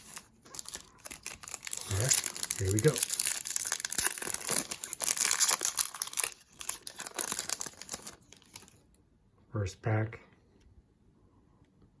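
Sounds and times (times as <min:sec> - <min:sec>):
wrapper tearing and crinkling: 0:00.0 - 0:08.8.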